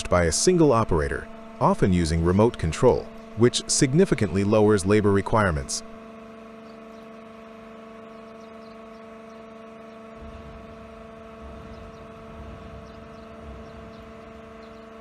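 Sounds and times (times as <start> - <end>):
steady tonal hum: 0.0 - 15.0
deep uneven rumble: 10.1 - 15.0.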